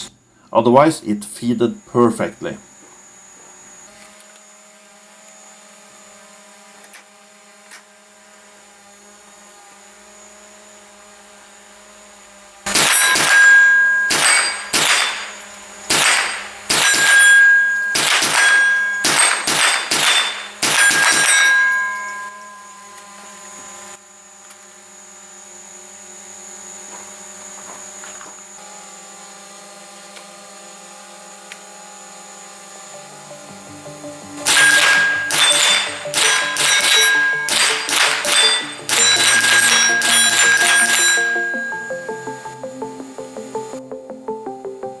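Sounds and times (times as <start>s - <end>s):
rifle shots: 12.7s - 22.6s, 34.4s - 41.8s
steel plate ringing ding: 12.7s - 23.5s, 33.0s - 42.7s
faint steady tones: 12.7s - 24.0s, 32.8s - 45.0s.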